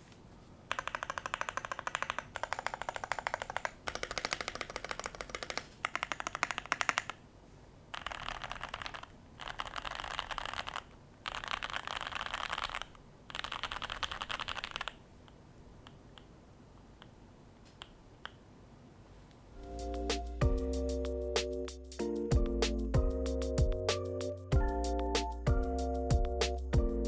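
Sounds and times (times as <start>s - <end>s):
mechanical keyboard typing: 0.7s - 7.2s, 7.9s - 15.0s.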